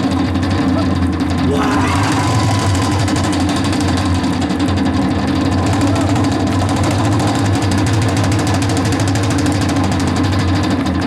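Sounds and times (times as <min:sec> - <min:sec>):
percussion ensemble fast roll: 0:01.6 - 0:04.7, 0:05.6 - 0:10.0.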